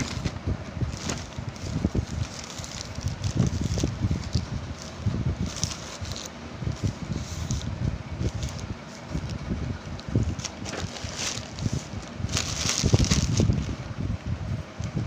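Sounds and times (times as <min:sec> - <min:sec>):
packaging rustling and crackling: 0:00.0 - 0:13.9.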